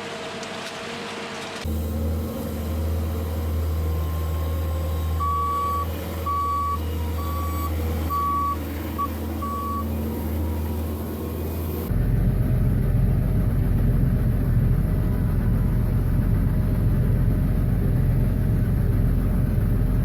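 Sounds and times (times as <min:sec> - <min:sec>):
low engine hum: 0:01.6 - 0:20.0
reversing alarm beeping: 0:03.7 - 0:09.9.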